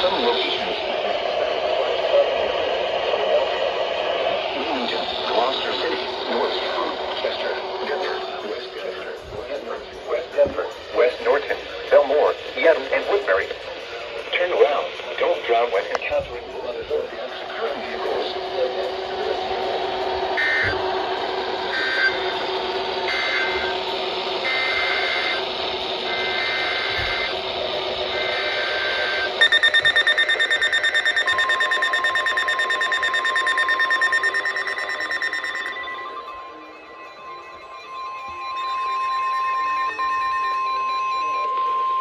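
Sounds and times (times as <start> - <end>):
steady warning alarm tone: 17.1 - 42.0
rapidly pulsing alert alarm: 18.8 - 42.0.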